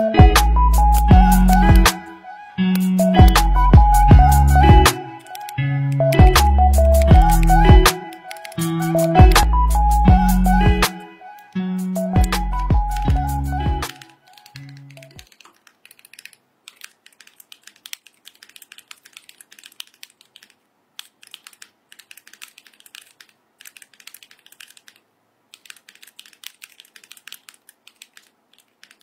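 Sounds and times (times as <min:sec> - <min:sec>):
mechanical keyboard key clacks: 0:05.2 - 0:06.3, 0:06.9 - 0:09.2, 0:13.8 - 0:25.0, 0:25.6 - 0:29.0.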